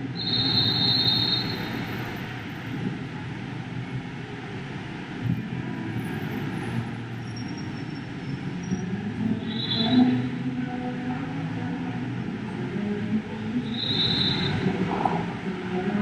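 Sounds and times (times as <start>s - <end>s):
city street traffic rumble: 0.0s - 16.0s
short high-pitched squeal: 0.2s - 2.0s, 9.4s - 10.2s, 13.7s - 14.7s.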